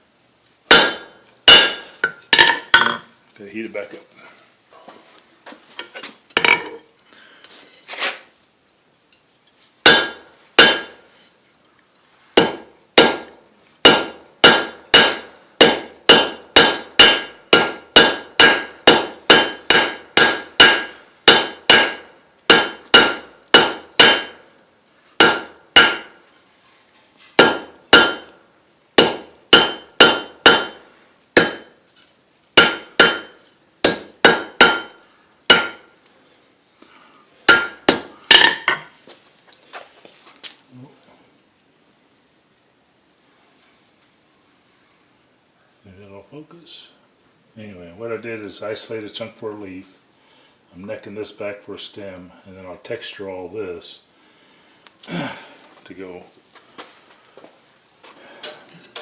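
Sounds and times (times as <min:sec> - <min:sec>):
hammer clanging on anvil: 0:00.7 - 0:03.1, 0:09.9 - 0:11.4, 0:12.4 - 0:24.6, 0:25.2 - 0:26.4, 0:27.4 - 0:31.9, 0:32.6 - 0:36.1, 0:37.5 - 0:39.0
metal clinking: 0:00.7 - 0:03.1, 0:06.4 - 0:07.0, 0:32.6 - 0:36.2, 0:37.5 - 0:39.0.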